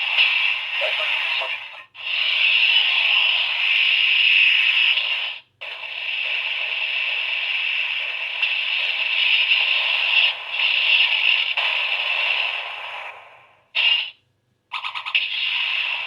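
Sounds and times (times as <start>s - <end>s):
toy speaker hissing buzz: 0.0s - 12.7s.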